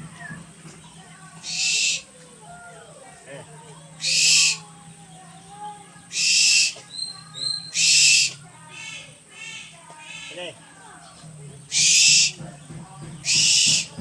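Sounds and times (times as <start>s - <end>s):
owl screeching: 1.4s - 2.1s, 4.0s - 4.6s, 6.1s - 10.3s, 11.7s - 12.4s, 13.2s - 13.9s.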